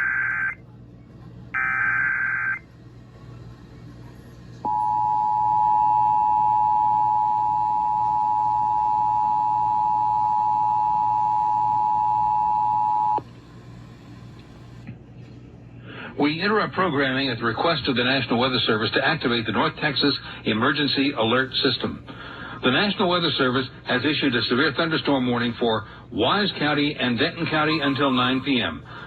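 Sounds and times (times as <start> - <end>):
two-tone alert alarm: 1.6 - 2.6.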